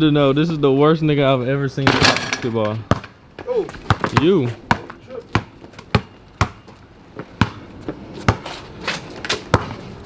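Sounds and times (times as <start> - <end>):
basketball bouncing on hard floor: 2.9 - 3.1.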